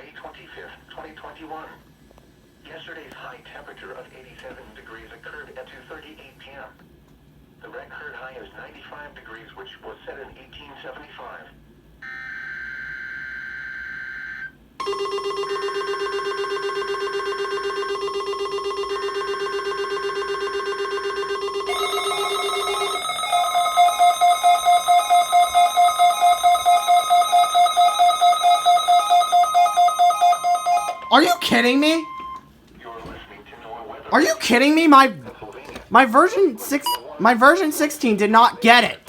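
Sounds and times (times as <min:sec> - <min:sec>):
louder fast-pulsing alarm: 0:12.0 - 0:32.4
buzzy data tone: 0:14.8 - 0:32.2
electronic alarms beeping: 0:14.8 - 0:32.5, 0:36.6 - 0:37.1.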